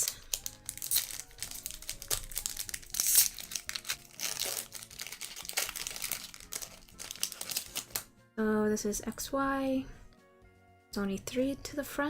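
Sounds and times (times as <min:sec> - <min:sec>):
plastic wrapper crinkling and tearing: 0:00.0 - 0:08.1.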